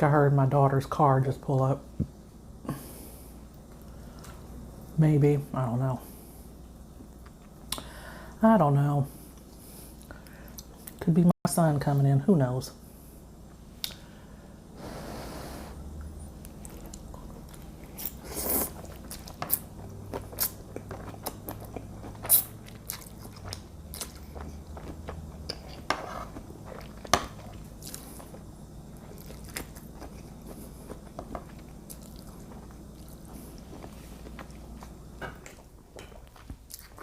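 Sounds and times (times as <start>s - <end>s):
person chewing food: 16.0s - 37.0s.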